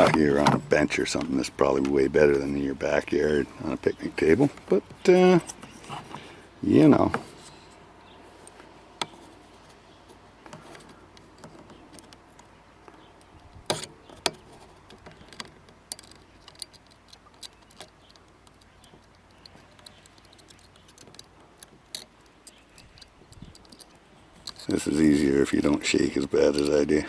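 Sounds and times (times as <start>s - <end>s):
small tools clicking and tapping: 10.5s - 24.9s, 25.6s - 27.0s.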